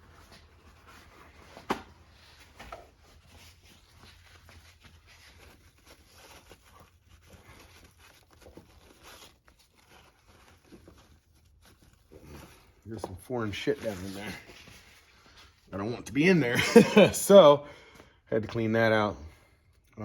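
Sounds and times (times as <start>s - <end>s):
faint scratching and rustling: 0.0s - 16.0s.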